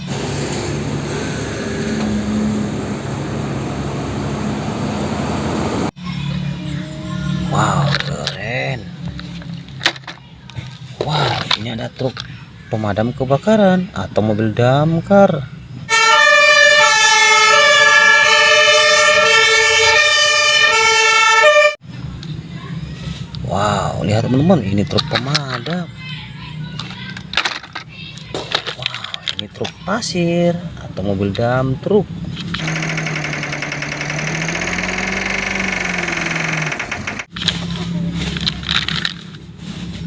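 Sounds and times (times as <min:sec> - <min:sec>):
toy fire truck siren: 0:15.9 - 0:21.8, 0:32.6 - 0:37.3
vehicle engine running: 0:32.1 - 0:40.0.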